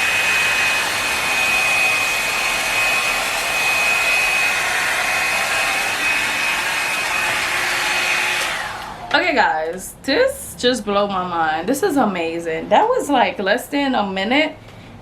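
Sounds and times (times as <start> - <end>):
hot air brush blowing: 0.0 - 9.0.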